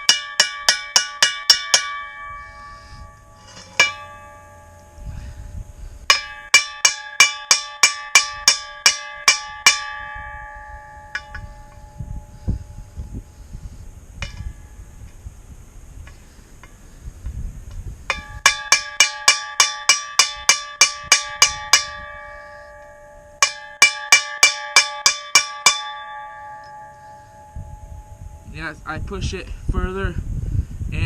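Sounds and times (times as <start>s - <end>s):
hammer striking metal: 0.0s - 5.0s, 6.1s - 12.1s, 18.1s - 28.5s
metal ringing: 0.0s - 13.5s, 14.2s - 15.1s, 18.1s - 28.9s.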